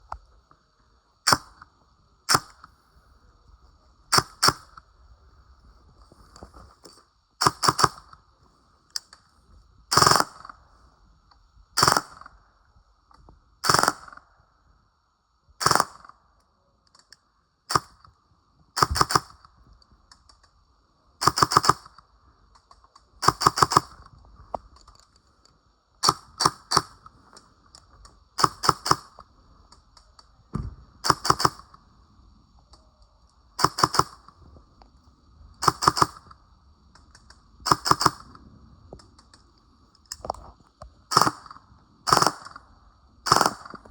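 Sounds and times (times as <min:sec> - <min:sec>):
airsoft rifle firing shots and bursts: 0:01.2 - 0:01.7, 0:02.3 - 0:02.7, 0:04.1 - 0:04.8, 0:07.4 - 0:08.2, 0:09.9 - 0:10.6, 0:11.8 - 0:12.3, 0:13.6 - 0:14.2, 0:15.6 - 0:16.2, 0:17.7 - 0:18.1, 0:18.8 - 0:19.5, 0:21.2 - 0:22.0, 0:23.2 - 0:24.1, 0:26.0 - 0:27.1, 0:28.4 - 0:29.2, 0:30.6 - 0:31.8, 0:33.6 - 0:34.3, 0:35.6 - 0:36.4, 0:37.6 - 0:38.4, 0:41.1 - 0:42.6, 0:43.2 - 0:43.9.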